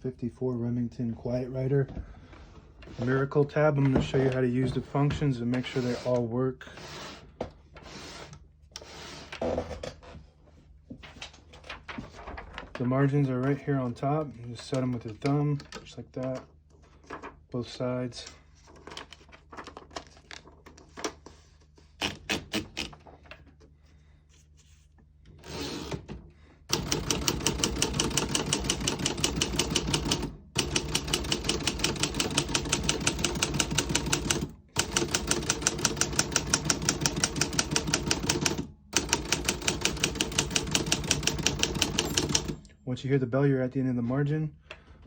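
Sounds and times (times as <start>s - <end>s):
typewriter keys clacking: 26.7s - 42.6s.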